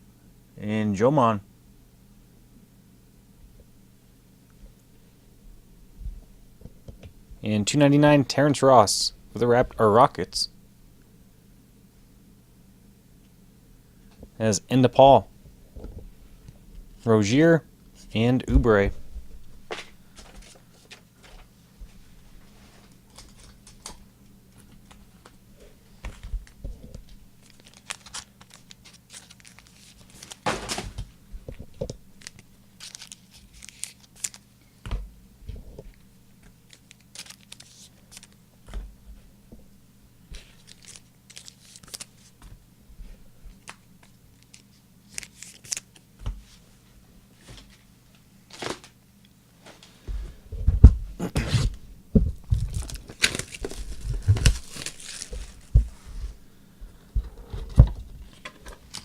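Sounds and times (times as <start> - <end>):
faint steady hum: 0.0 - 59.0
plastic wrapping tearing and crinkling: 27.4 - 30.8, 32.2 - 34.4, 36.7 - 38.4, 40.4 - 42.3, 43.6 - 46.0, 52.4 - 55.8.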